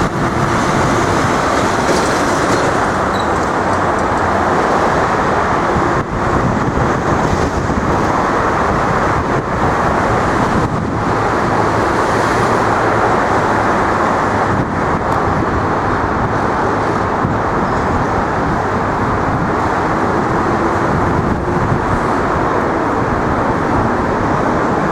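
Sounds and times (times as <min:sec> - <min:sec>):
road traffic roar: 0:00.0 - 0:24.9.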